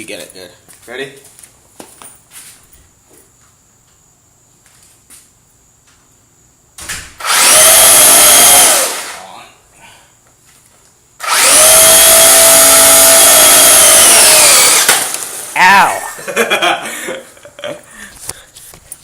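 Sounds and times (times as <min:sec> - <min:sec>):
rc car motor whining: 0:07.2 - 0:09.2, 0:11.2 - 0:15.6.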